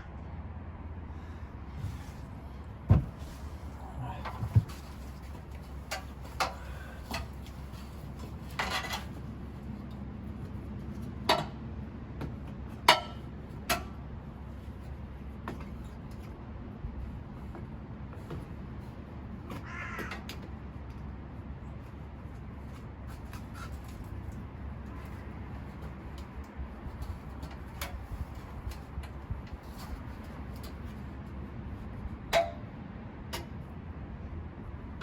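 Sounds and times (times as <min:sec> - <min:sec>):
steady low hum: 0:00.0 - 0:19.5.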